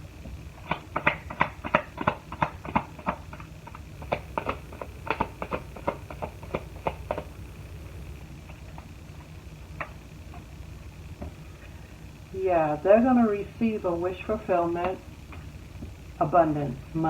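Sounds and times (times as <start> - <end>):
cards tapping and snapping: 0.6 - 7.9.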